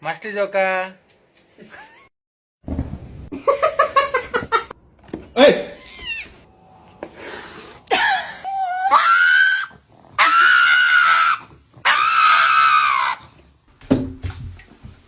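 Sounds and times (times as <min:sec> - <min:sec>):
cat yowling: 0:05.8 - 0:06.4, 0:08.3 - 0:13.3.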